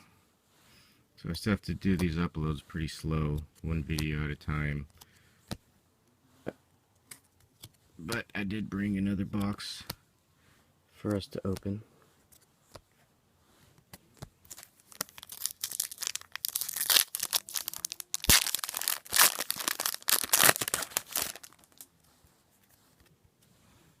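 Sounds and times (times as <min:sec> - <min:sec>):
wrapper tearing and crinkling: 0:14.5 - 0:21.9.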